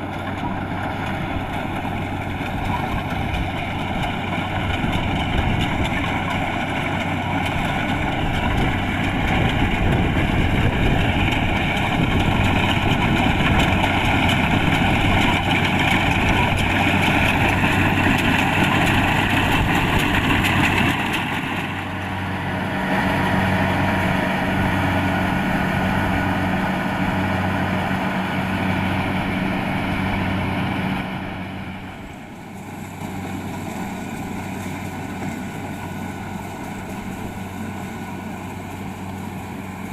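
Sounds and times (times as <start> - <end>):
combine harvester engine hum: 0.0 - 39.9.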